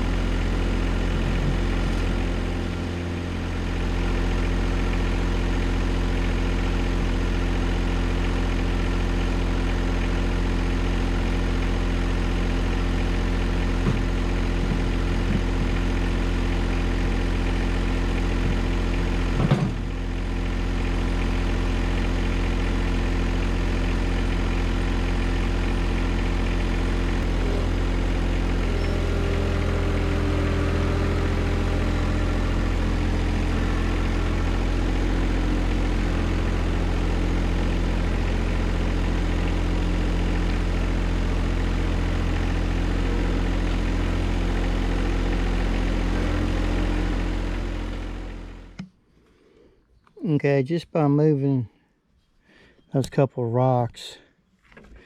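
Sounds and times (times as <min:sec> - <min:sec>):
diesel tractor engine running: 0:00.0 - 0:48.9.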